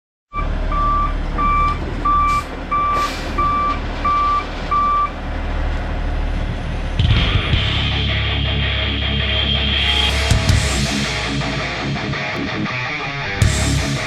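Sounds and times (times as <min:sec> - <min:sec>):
backup alarm beeping: 0:00.3 - 0:05.2
engine rumble: 0:00.3 - 0:14.0.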